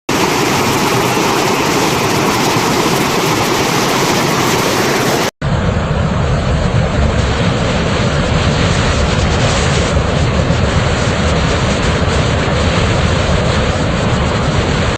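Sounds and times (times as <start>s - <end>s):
waterfall rushing: 0.1s - 5.3s.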